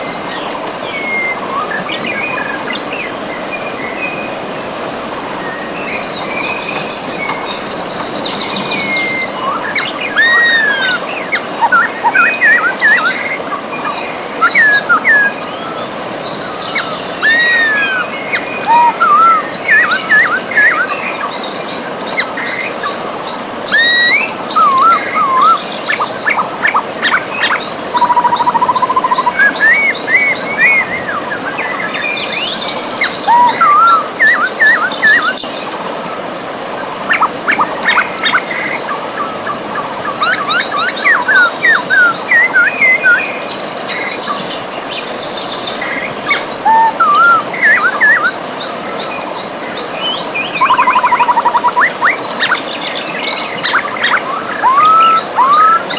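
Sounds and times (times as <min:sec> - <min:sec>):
birds singing and calling: 0:00.0 - 0:55.9
river rushing: 0:00.0 - 0:55.9
bird trill: 0:05.5 - 0:13.6, 0:16.6 - 0:21.0, 0:23.6 - 0:31.2, 0:33.0 - 0:35.4, 0:45.8 - 0:48.9, 0:50.0 - 0:55.9.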